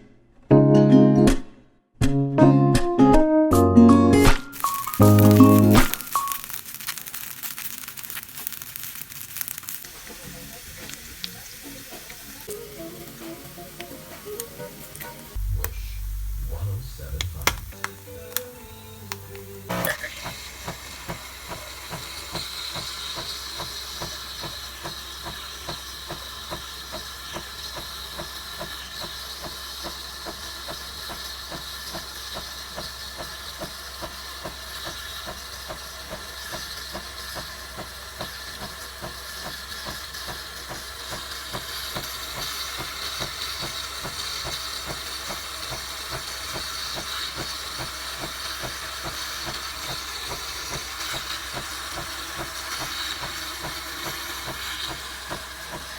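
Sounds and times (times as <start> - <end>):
steam hissing: 4.6 - 55.9
low hum: 15.3 - 20.0
pump pulsing: 19.7 - 55.9.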